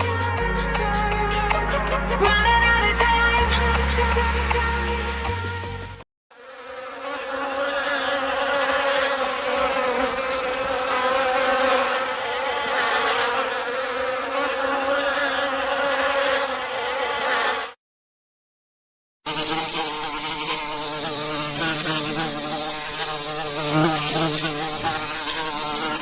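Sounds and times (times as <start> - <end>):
music: 0.0 - 6.0
honey bees buzzing: 6.4 - 17.5, 19.3 - 26.0.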